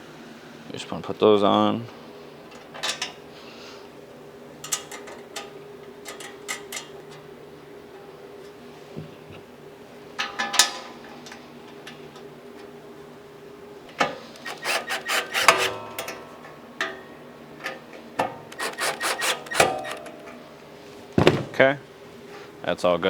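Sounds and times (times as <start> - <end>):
screws scraping into metal: 14.2 - 16.4, 18.5 - 20.4.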